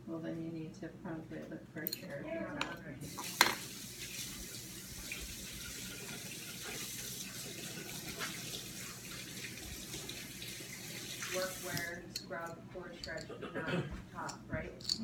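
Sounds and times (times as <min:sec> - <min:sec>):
tap water running into sink: 0:03.1 - 0:12.0.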